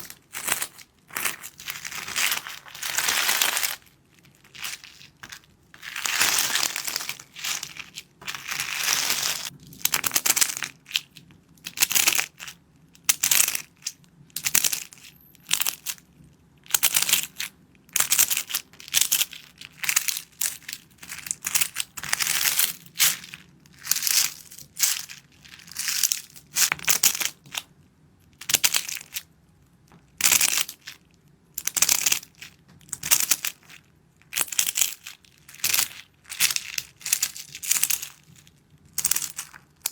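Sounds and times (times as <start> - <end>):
crunchy material being crushed: 0.0 - 12.5.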